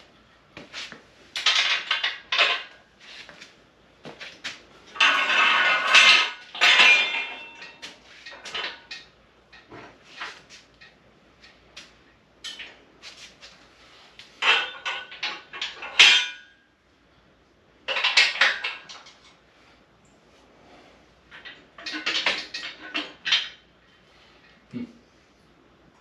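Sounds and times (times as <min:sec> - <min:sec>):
steel crane parts clanking: 0:01.3 - 0:02.8, 0:04.9 - 0:11.6, 0:14.4 - 0:16.5, 0:17.9 - 0:19.4, 0:21.3 - 0:24.6
metal clatter: 0:01.4 - 0:02.8, 0:04.9 - 0:11.0, 0:14.4 - 0:16.5, 0:17.9 - 0:19.4, 0:21.3 - 0:23.7.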